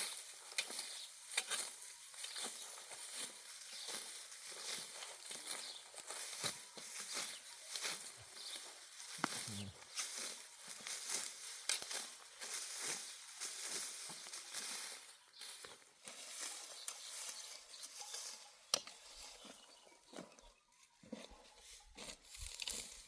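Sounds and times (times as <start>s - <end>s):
dry stalks rustling and crackling: 0.0s - 23.0s.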